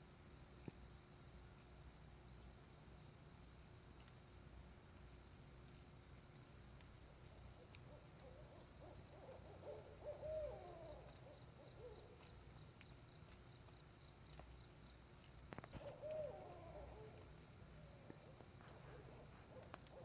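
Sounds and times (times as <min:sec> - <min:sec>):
faint owls hooting: 0:07.2 - 0:12.6, 0:15.6 - 0:20.0.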